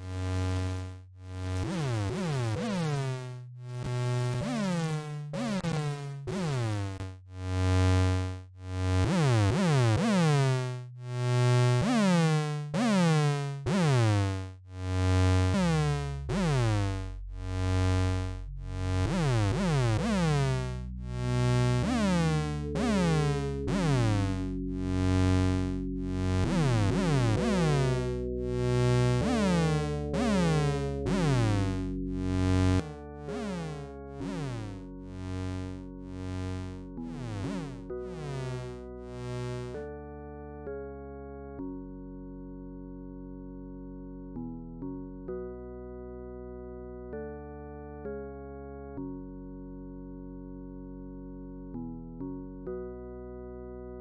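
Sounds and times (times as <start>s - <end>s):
low bass line: 0.0s - 4.4s, 13.6s - 40.3s
organ chords: 19.2s - 49.2s.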